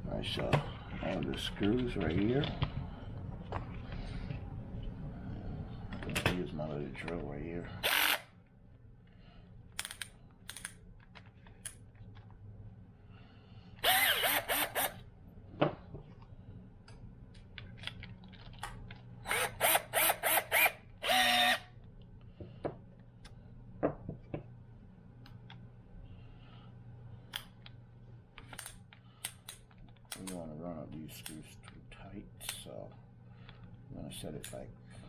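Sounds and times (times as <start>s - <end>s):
cordless drill driving screws: 7.8s - 8.3s, 13.8s - 15.0s, 19.3s - 21.6s.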